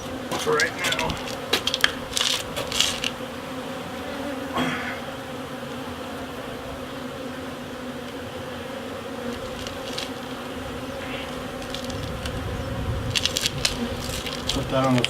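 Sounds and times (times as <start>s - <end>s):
bees buzzing: 0.0s - 15.0s
brief rustle: 13.1s - 15.0s.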